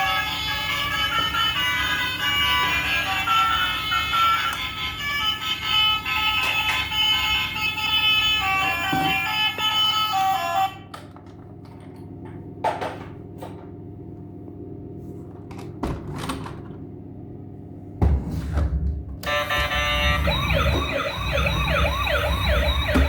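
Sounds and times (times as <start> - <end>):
toy electronic horn melody: 0.0 - 10.9, 19.2 - 23.0
steady hum: 19.2 - 23.0.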